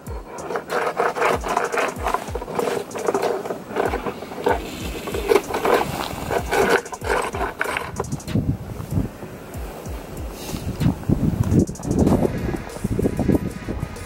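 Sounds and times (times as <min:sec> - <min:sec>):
snow crunching and scraping: 0:00.0 - 0:13.4.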